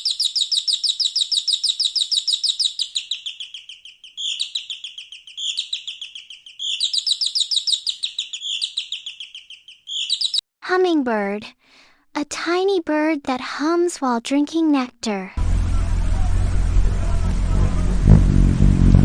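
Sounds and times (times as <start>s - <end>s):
canary singing trills: 0.0s - 10.4s.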